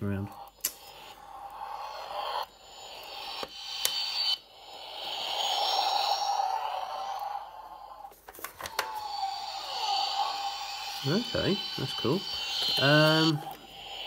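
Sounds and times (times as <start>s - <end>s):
electronic engine hum from toy speaker: 0.2s - 8.1s, 8.7s - 14.0s.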